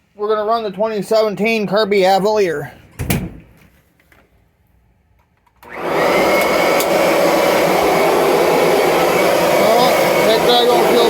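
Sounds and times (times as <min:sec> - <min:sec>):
vacuum cleaner motor running: 0:05.6 - 0:11.0.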